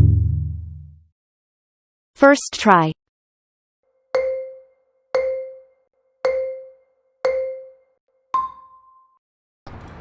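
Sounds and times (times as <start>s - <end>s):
short mallet-like beeps: 4.2s - 5.7s, 6.3s - 7.8s, 8.4s - 9.2s.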